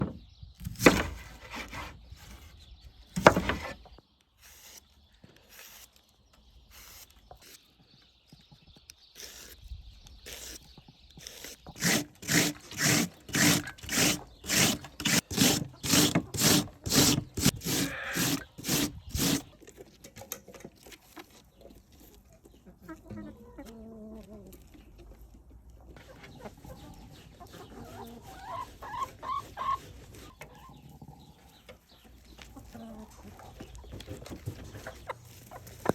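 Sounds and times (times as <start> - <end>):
radish grating strokes: 11.2 - 19.5.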